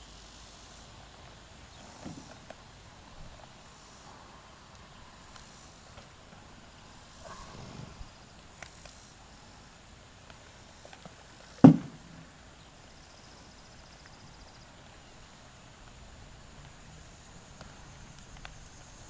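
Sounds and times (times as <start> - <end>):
loud sudden thump: 11.6 - 12.2.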